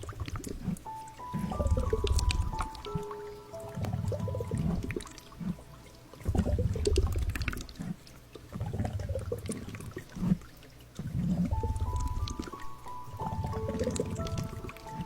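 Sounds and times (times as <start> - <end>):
water sloshing and squishing: 0.0 - 3.1, 3.7 - 12.8
small bubbly pops: 3.9 - 12.6.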